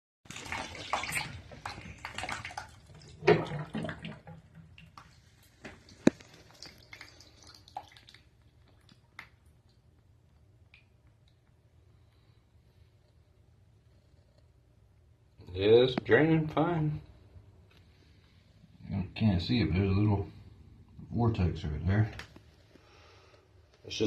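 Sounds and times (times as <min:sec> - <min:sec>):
water running in a bathtub: 0:00.3 - 0:10.0
water drips: 0:00.3 - 0:11.5.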